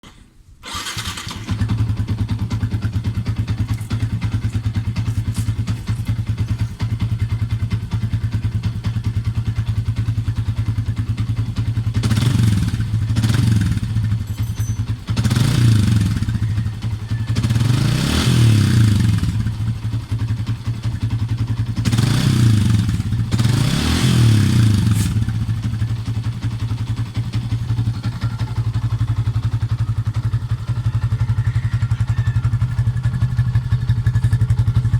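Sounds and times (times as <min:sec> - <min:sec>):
motorcycle engine idling: 0:00.7 - 0:34.9
engine revving in throttle blips: 0:11.9 - 0:14.3, 0:15.1 - 0:20.2, 0:21.7 - 0:27.5.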